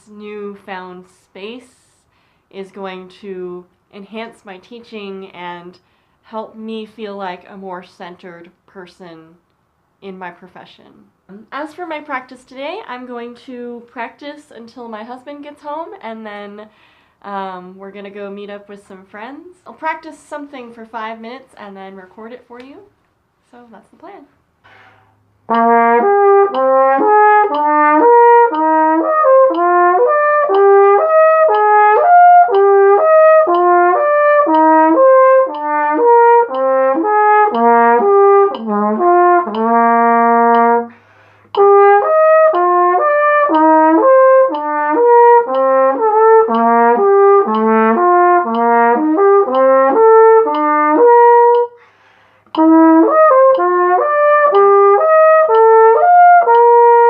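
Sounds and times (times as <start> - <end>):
flugelhorn playing legato: 25.5 - 51.8, 52.6 - 57.0.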